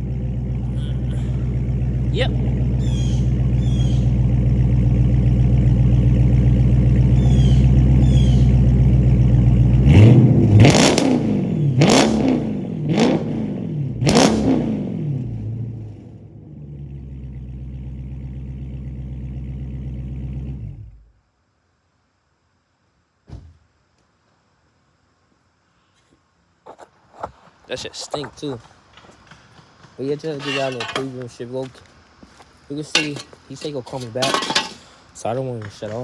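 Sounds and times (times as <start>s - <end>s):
car engine idling and revving: 0.0s - 21.2s.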